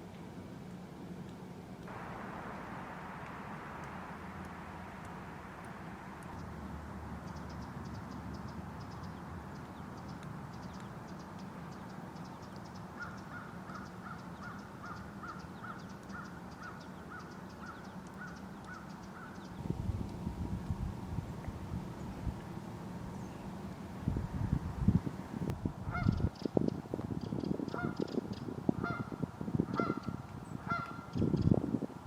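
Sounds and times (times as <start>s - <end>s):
low rumble: 1.9s - 7.4s.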